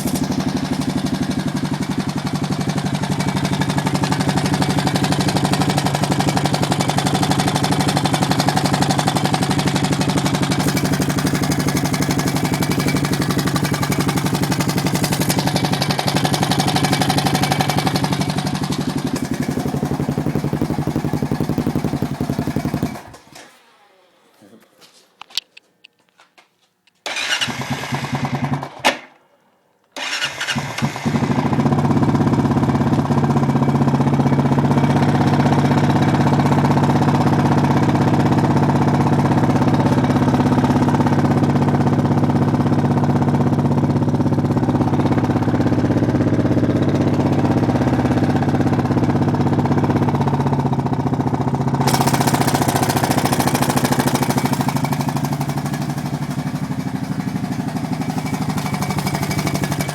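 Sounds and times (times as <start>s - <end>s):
engine ticking: 0.0s - 23.2s, 31.4s - 59.9s
engine idling: 0.0s - 23.3s, 31.0s - 59.9s
electric starter cranking: 0.0s - 23.6s, 27.0s - 29.0s, 30.0s - 31.6s, 51.8s - 57.3s.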